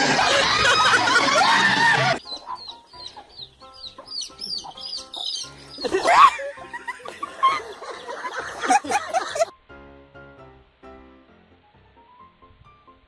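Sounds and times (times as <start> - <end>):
people laughing and chattering: 0.0 - 2.2, 5.7 - 9.5
background music: 0.0 - 13.0
bird chirping: 2.2 - 6.0.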